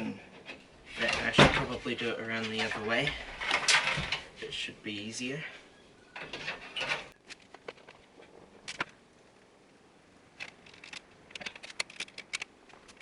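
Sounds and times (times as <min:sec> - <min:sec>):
computer parts scraping: 0:10.4 - 0:13.0.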